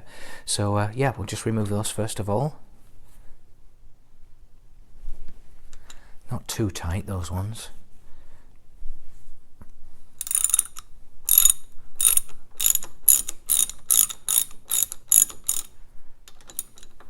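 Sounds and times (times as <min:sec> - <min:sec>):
socket ratchet clicking: 0:10.2 - 0:15.7, 0:16.3 - 0:17.0.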